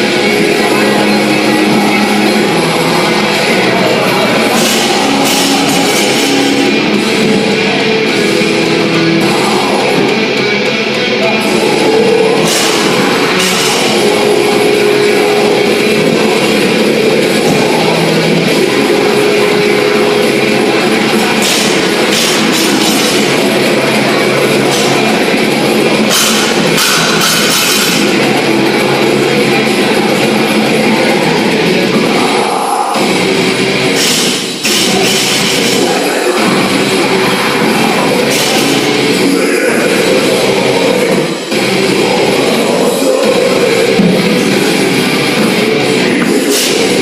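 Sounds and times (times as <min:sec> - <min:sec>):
distorted electric guitar: 0:00.0 - 0:47.0
heavy metal music: 0:00.0 - 0:47.0
cymbal crashes: 0:04.5 - 0:07.2, 0:12.4 - 0:15.3, 0:33.0 - 0:39.2.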